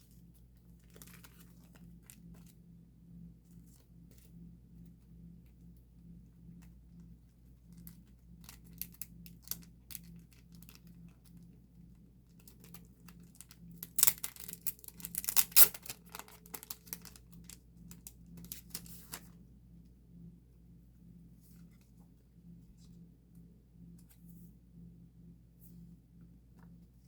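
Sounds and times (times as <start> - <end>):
packaging rustling and crinkling: 0.6 - 2.5, 12.4 - 19.3.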